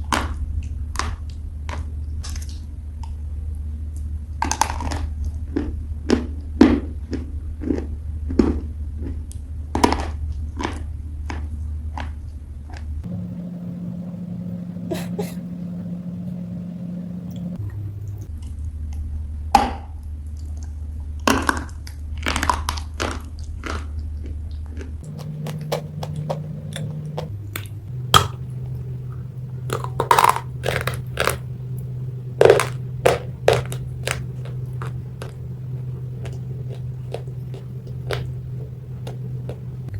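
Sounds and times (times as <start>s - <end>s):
low hum: 13.0s - 18.3s, 25.0s - 39.9s
chewing clay crunches: 25.0s - 39.9s.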